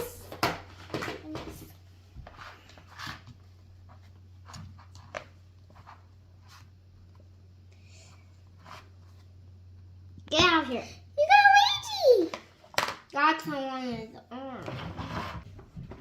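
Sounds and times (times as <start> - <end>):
steady low hum: 0.0 - 11.5.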